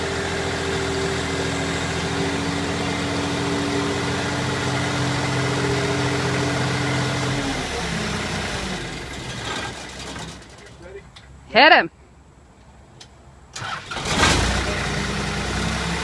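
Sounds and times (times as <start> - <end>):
bulldozer diesel engine running: 0.0 - 10.8, 14.0 - 16.0.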